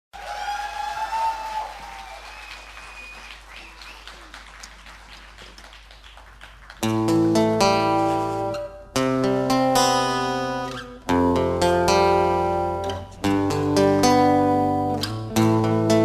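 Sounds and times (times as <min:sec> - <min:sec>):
acoustic guitar strumming chords: 0:06.9 - 0:16.0.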